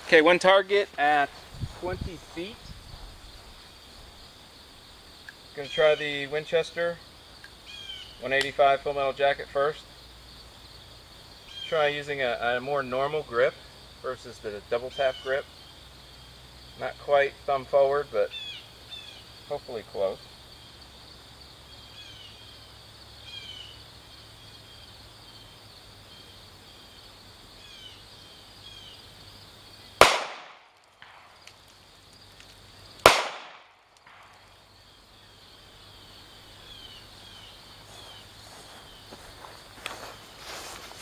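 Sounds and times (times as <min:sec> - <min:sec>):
faint chirping: 0:02.4 - 0:08.4, 0:20.2 - 0:30.0, 0:34.0 - 0:40.4
pistol shots: 0:30.0 - 0:31.3, 0:33.0 - 0:34.3.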